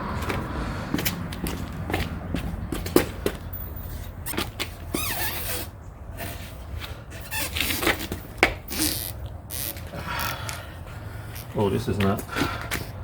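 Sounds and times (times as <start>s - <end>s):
rubber squeak: 4.2s - 5.8s, 7.2s - 10.4s.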